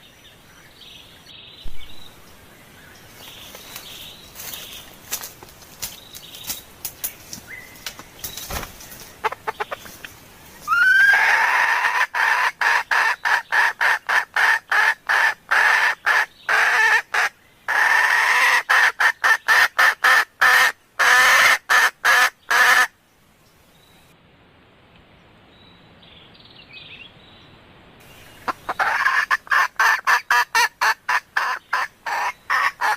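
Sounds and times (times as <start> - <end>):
hen clucking rapidly: 9.2 - 10.0, 10.7 - 22.9, 28.4 - 32.9.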